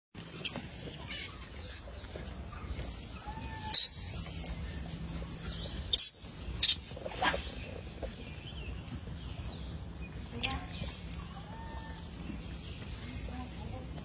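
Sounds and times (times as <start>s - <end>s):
baby monkey squeaking: 3.7s - 4.2s, 5.9s - 7.0s.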